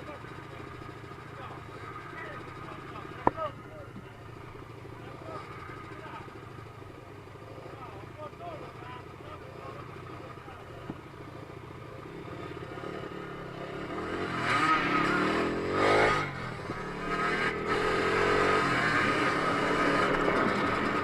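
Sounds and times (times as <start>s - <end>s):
dirt bike engine revving: 0.0s - 6.8s, 11.4s - 21.0s.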